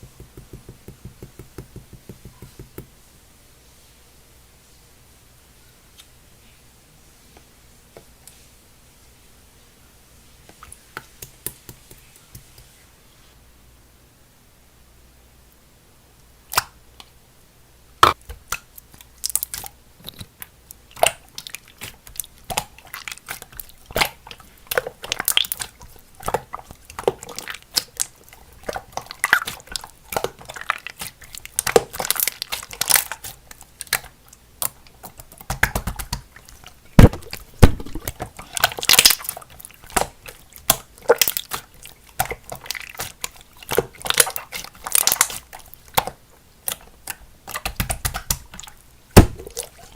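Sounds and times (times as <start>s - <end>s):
slime squished by hand crackling: 37.0s - 48.6s.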